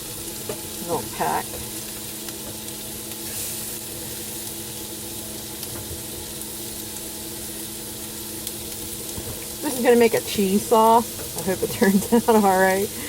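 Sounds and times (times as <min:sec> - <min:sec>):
meat sizzling in a frying pan: 0:00.0 - 0:13.0
steady low hum: 0:00.0 - 0:13.0.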